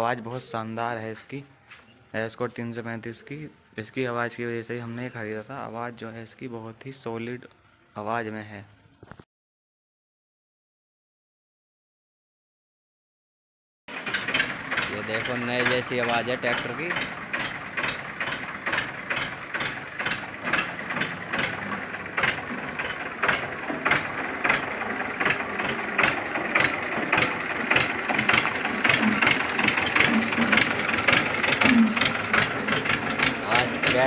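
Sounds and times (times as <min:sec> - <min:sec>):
tractor diesel engine idling: 0:13.9 - 0:34.0.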